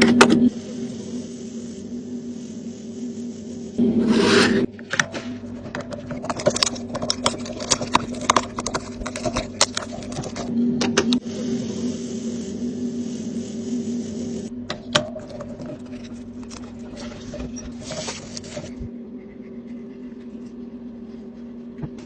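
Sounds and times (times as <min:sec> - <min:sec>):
steady machine hum: 0:00.0 - 0:22.0
loud hiss: 0:00.5 - 0:04.7, 0:11.1 - 0:14.6.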